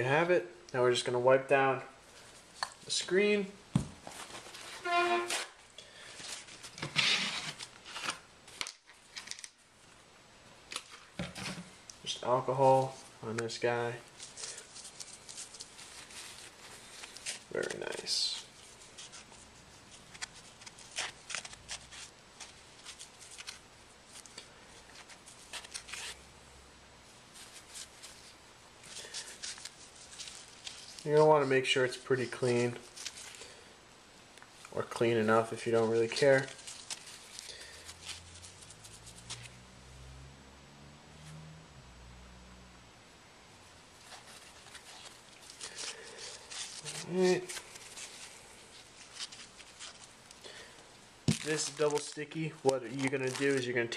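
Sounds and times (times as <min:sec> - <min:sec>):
rustling scrape: 0:04.0 - 0:08.2, 0:14.1 - 0:26.2, 0:27.3 - 0:33.6, 0:34.9 - 0:39.7, 0:43.9 - 0:50.6.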